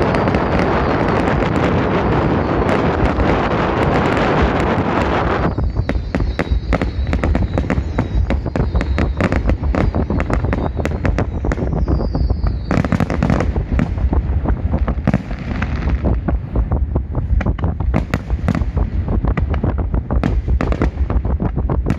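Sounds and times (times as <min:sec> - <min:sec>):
fireworks bangs and crackles: 0:00.0 - 0:21.9
low rumble: 0:00.0 - 0:21.9
high whistling tone: 0:05.2 - 0:13.4.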